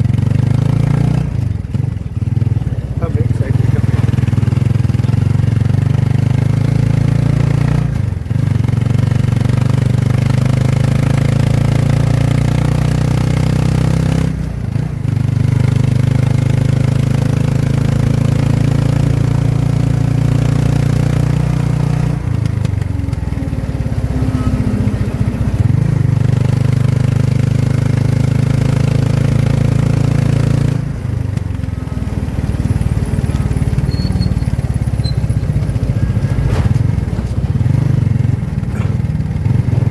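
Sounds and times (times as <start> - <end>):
motorcycle engine droning: 0.0 - 39.9.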